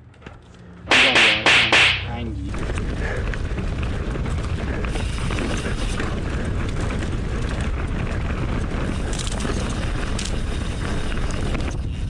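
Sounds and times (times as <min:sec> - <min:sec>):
bike tyres rolling on dirt: 0:00.0 - 0:00.9, 0:02.5 - 0:12.0
wind buffeting microphone: 0:02.5 - 0:12.0.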